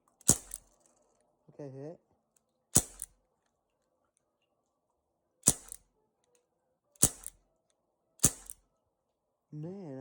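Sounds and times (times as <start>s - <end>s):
air pistol shots popping: 0.2s - 0.6s, 2.8s - 3.1s, 5.4s - 5.8s, 7.0s - 7.4s, 8.2s - 8.6s.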